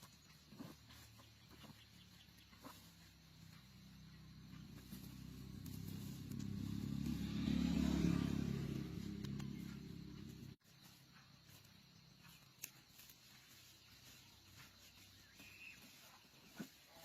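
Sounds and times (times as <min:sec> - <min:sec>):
vehicle engine passing by: 0:03.8 - 0:10.6.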